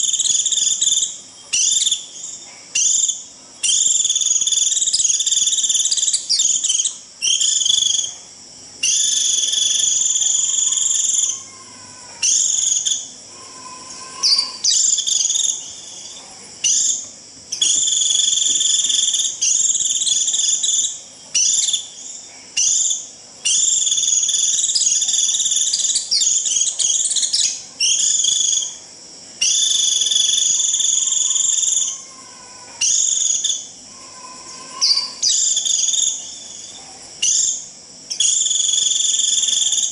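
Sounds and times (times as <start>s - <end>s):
bird shrill buzzy call: 8.8s - 15.6s, 29.4s - 36.4s.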